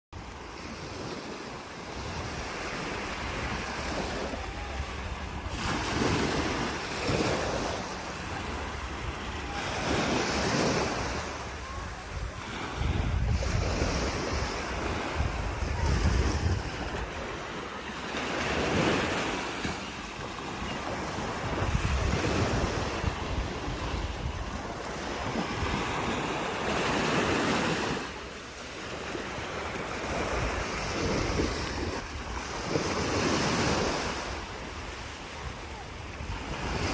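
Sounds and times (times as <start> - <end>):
sea waves breaking: 0.2 - 36.9
wind buffeting microphone: 2.0 - 17.5, 18.4 - 27.9.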